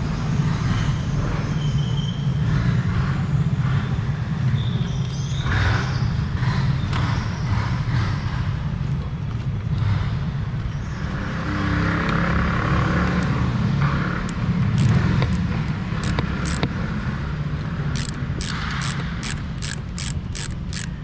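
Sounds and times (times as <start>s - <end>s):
vehicle traffic rumble: 0.0s - 21.0s
sharp clicks: 14.2s - 16.8s, 17.9s - 21.0s
hand ratchet clicking: 14.8s - 16.7s, 17.9s - 21.0s.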